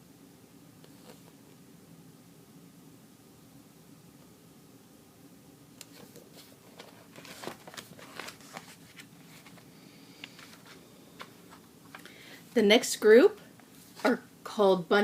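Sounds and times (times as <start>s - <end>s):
magazine pages turning: 5.8s - 12.0s.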